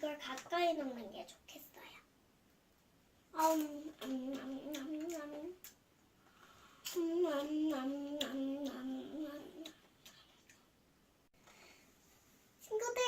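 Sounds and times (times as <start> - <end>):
child singing a tune: 3.4 - 5.7, 6.8 - 9.9, 12.6 - 13.0.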